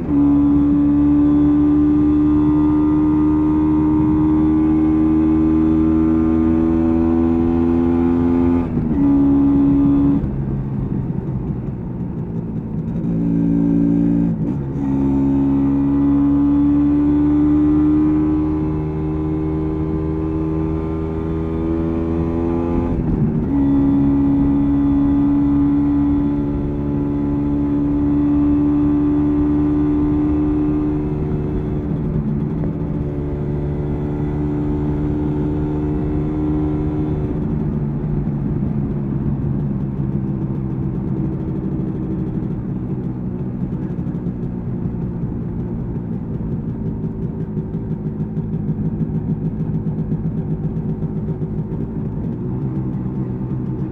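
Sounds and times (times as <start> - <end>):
two-stroke motorcycle engine: 15.8 - 53.9.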